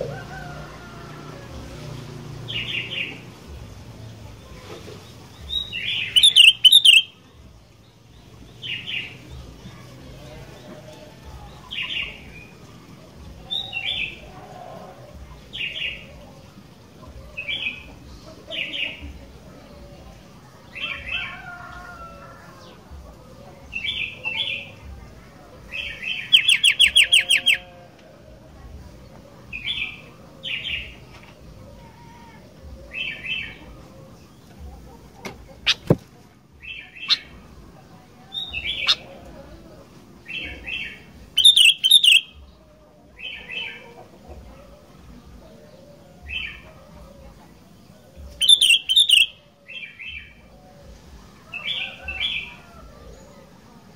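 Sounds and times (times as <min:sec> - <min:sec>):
bulbul chattering calls: 0:05.4 - 0:07.2, 0:25.7 - 0:27.9, 0:32.8 - 0:36.0, 0:36.6 - 0:42.5, 0:48.2 - 0:50.6
bulbul calling: 0:05.5 - 0:07.2, 0:25.9 - 0:27.8, 0:35.4 - 0:36.0, 0:36.7 - 0:37.4, 0:38.4 - 0:39.2, 0:41.4 - 0:42.3, 0:48.3 - 0:49.4.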